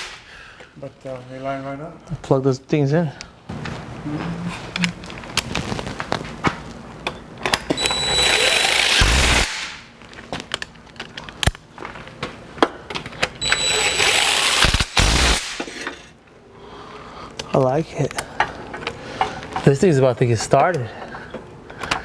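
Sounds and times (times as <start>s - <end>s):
impact wrench running: 7.7s - 9.8s, 13.4s - 16.1s.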